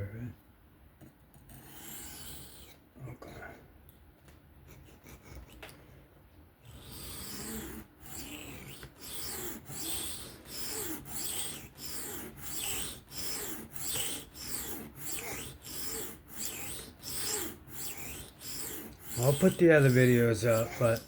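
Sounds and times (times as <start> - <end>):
knife scraping on sharpening stone: 6.9 - 21.0.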